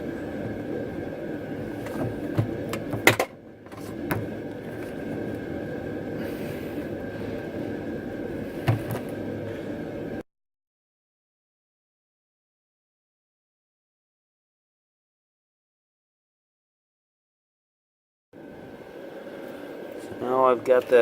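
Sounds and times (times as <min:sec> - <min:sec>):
steady hum: 0:00.0 - 0:10.2, 0:18.4 - 0:21.0
knocks and clunks of handling: 0:08.6 - 0:09.2.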